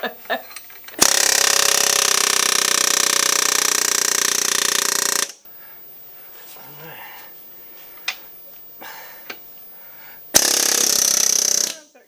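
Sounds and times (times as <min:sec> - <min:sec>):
impact tool hammering: 0:10.3 - 0:11.8.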